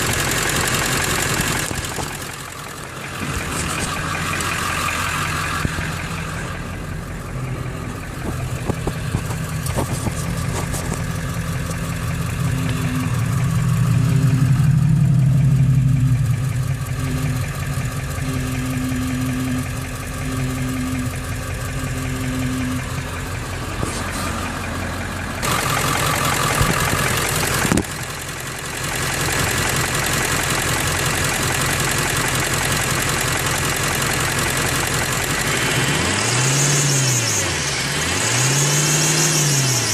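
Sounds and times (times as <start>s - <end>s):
engine idling: 0.0s - 39.9s
low pulsing tone: 1.5s - 28.7s.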